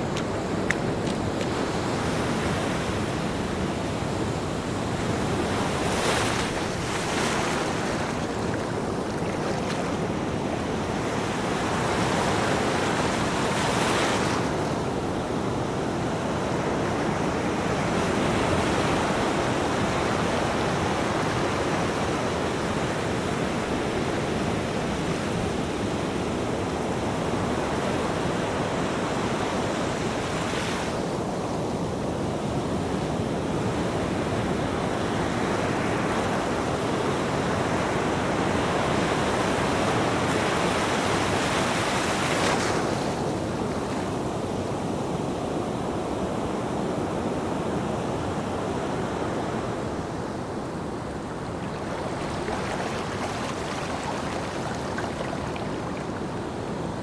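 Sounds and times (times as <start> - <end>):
ocean surf rushing: 0.0 - 21.9, 48.0 - 57.0
wave breaking: 51.3 - 56.4.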